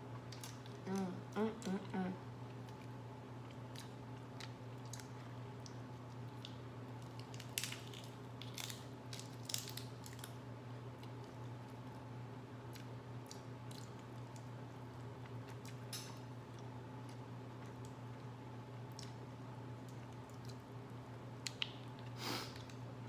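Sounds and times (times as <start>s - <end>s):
steady low hum: 0.0s - 23.0s
chewing: 12.7s - 20.7s.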